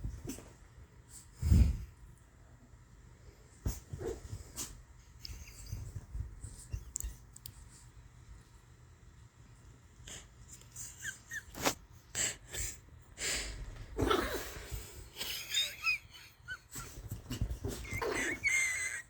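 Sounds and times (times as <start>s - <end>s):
dog wheezing and snorting: 16.6s - 19.0s
dog squeaks: 17.8s - 19.0s.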